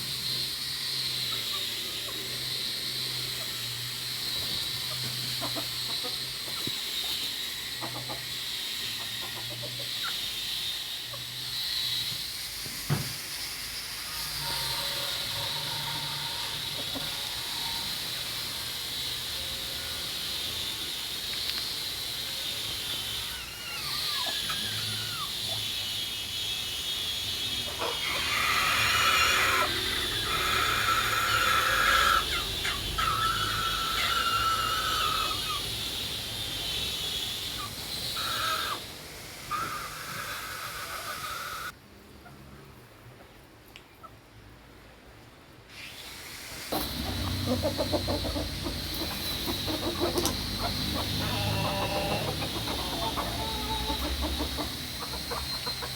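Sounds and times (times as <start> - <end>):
chickens clucking: 4.2 - 11.3, 14.7 - 18.8, 27.5 - 36.0, 36.6 - 42.4, 46.7 - 55.9.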